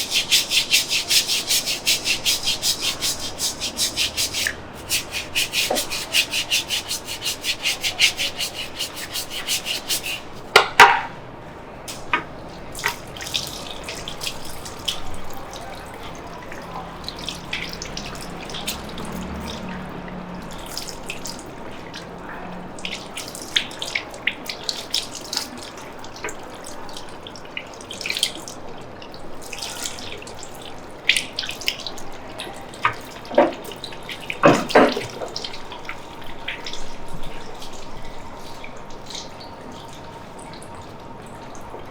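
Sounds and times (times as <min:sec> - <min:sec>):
rhythmic rubbing on hair: 0:00.0 - 0:10.4
water running into a basin: 0:00.0 - 0:10.5, 0:11.9 - 0:41.9.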